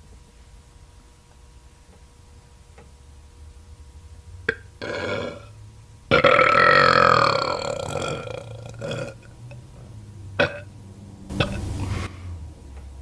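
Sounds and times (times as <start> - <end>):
woman burping: 4.5 - 5.5, 6.1 - 9.3, 10.4 - 10.7, 11.4 - 11.9.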